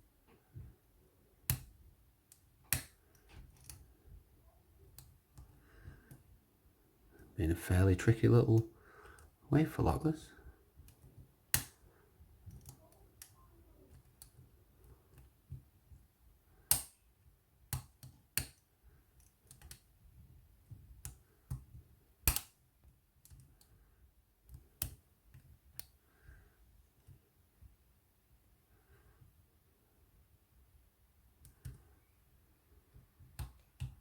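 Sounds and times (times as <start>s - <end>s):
lock pick clicking in lock: 16.7s - 17.0s, 22.2s - 22.6s.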